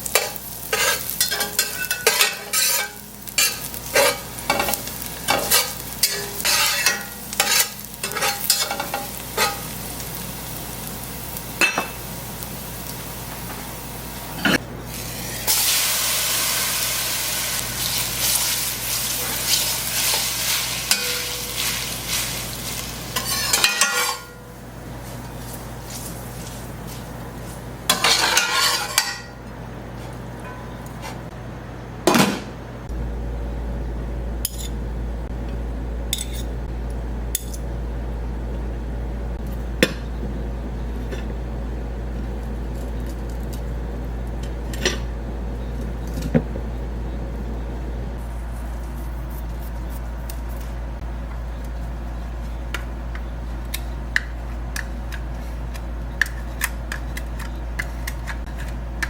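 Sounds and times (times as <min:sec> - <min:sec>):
steady low hum: 0:00.0 - 0:59.0
pots and pans clattering: 0:00.1 - 0:09.7, 0:23.1 - 0:24.4, 0:27.9 - 0:29.4.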